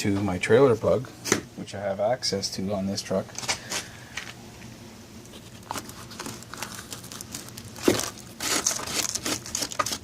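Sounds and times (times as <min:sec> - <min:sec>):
rustling and crinkling: 0:03.4 - 0:10.0.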